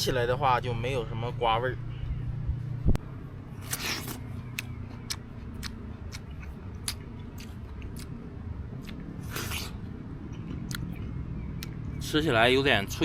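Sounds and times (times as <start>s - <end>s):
melon crunching bites: 3.6s - 8.2s, 8.8s - 9.8s.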